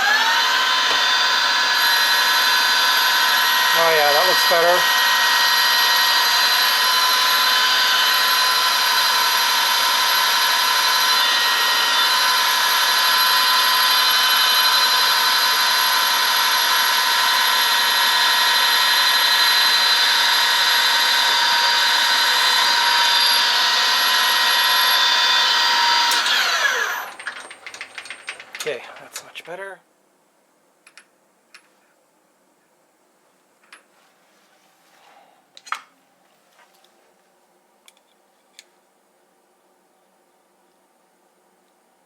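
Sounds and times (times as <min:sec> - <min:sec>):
lathe spindle winding down: 0:00.0 - 0:29.2
metal lathe gear whine: 0:00.0 - 0:29.2.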